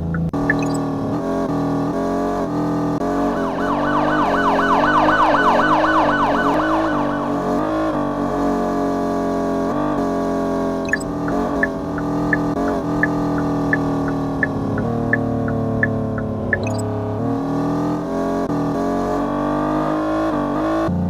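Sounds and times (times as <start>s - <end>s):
siren-like sweeping sound: 3.0s - 8.4s.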